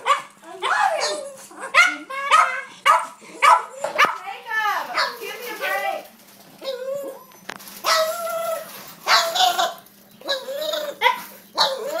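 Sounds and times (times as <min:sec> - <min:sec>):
dog whining yelps: 0:00.1 - 0:04.2, 0:06.6 - 0:12.0.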